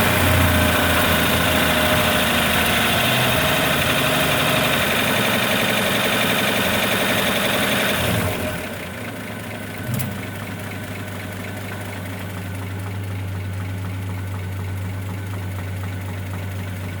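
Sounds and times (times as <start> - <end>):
engine idling with light ticking: 0.0 - 17.0
sharp click: 9.8 - 10.3.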